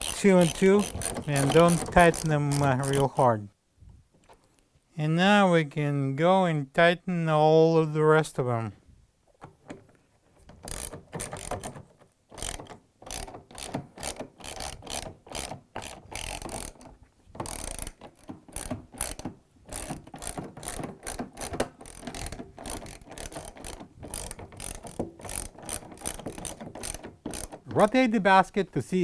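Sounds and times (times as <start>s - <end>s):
socket ratchet clicking: 0.0s - 3.4s, 10.6s - 28.0s.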